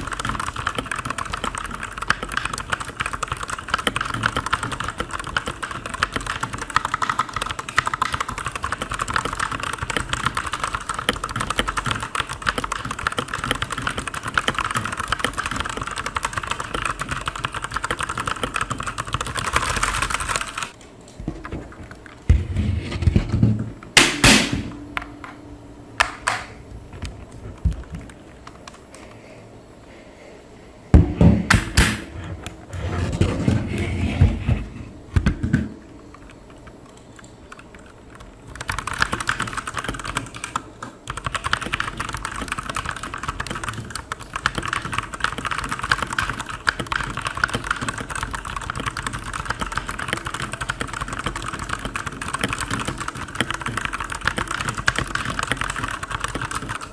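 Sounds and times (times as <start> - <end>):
mechanical keyboard typing: 0.0 - 22.2, 35.5 - 56.9.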